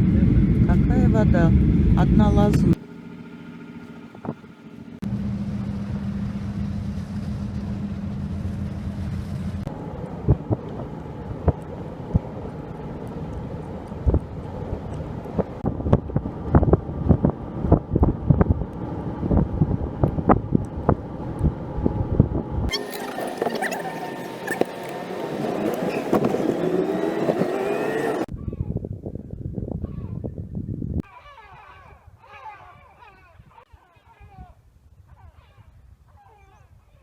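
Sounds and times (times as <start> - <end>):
engine running: 0.0 - 21.7, 22.7 - 28.3
wind noise on microphone: 13.4 - 22.7, 28.3 - 33.6.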